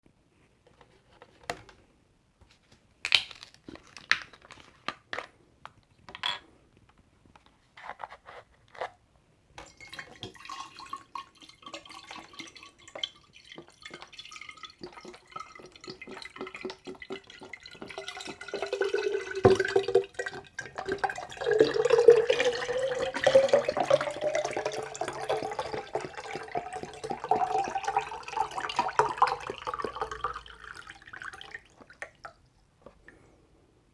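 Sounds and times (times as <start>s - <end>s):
liquid glugging while drinking: 9.7s - 33.2s.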